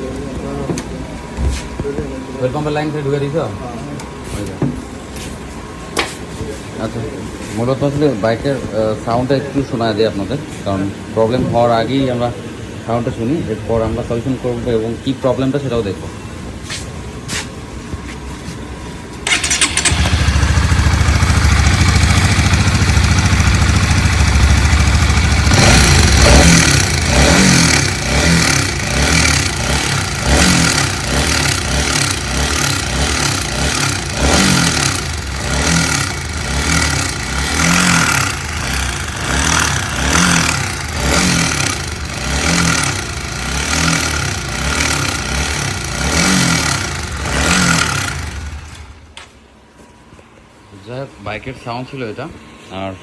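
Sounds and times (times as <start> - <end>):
motorcycle engine revving: 19.2 - 49.1.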